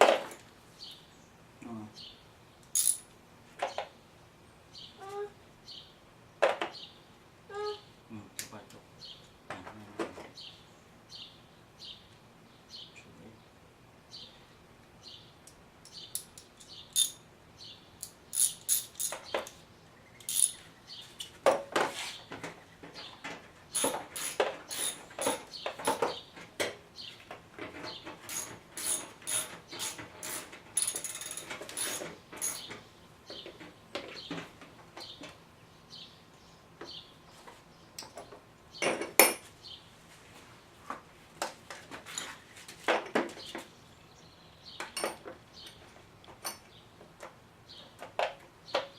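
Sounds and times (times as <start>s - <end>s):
metallic clicks and clinks: 2.6s - 3.1s, 15.8s - 17.2s, 18.0s - 19.6s, 20.2s - 20.6s, 28.2s - 32.8s.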